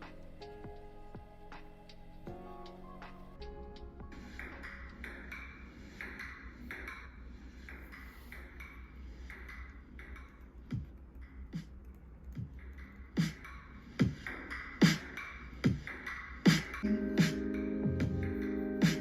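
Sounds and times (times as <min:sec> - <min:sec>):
deep drum thumps in music: 0:16.5 - 0:19.0.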